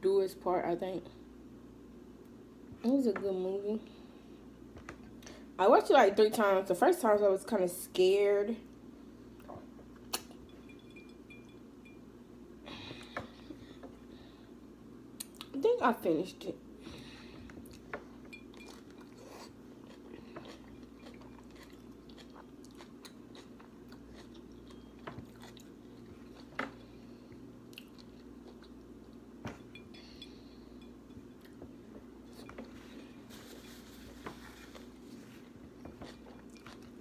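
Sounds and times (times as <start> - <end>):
steady low hum: 0.0 - 37.0
person chewing and crunching food: 17.3 - 37.0.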